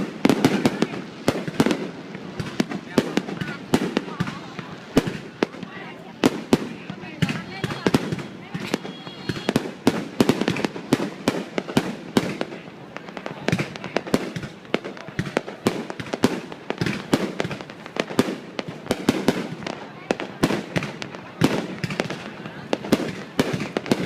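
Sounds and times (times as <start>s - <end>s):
fireworks banging: 0.0s - 24.0s.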